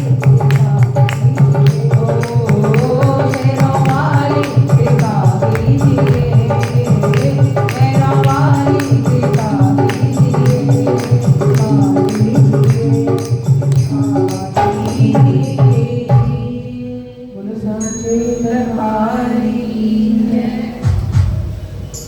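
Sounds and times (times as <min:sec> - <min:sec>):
jingling percussion: 0:00.0 - 0:16.0, 0:17.8 - 0:18.8
voices singing devotional melody: 0:00.0 - 0:21.3.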